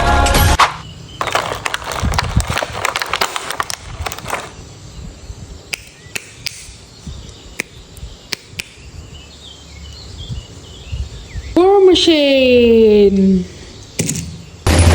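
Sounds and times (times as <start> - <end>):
plastic packaging crinkling: 1.2 - 4.6
sharp plastic clicks: 5.7 - 6.8, 7.6 - 8.8, 14.0 - 14.4.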